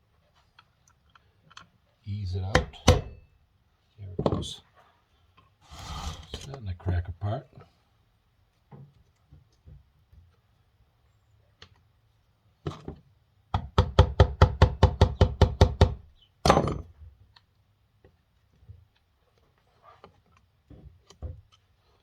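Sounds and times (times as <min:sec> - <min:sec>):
hammer knocking on metal casing: 0:02.5 - 0:03.2, 0:13.6 - 0:16.8.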